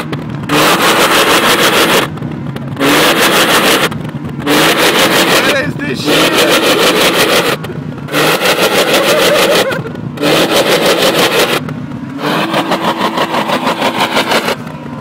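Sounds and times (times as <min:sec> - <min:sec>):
car engine revving hard: 0:00.0 - 0:15.0
engine crackles: 0:00.0 - 0:15.0.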